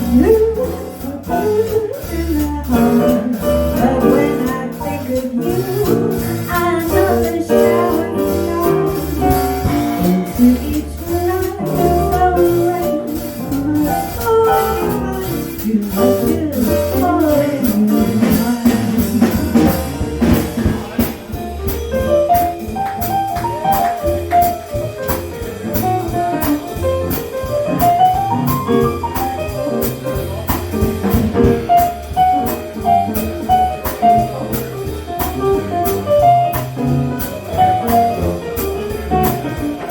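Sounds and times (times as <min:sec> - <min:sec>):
bass: 0:00.0 - 0:39.9
drums with steady cymbal: 0:00.0 - 0:39.9
piano: 0:00.0 - 0:39.9.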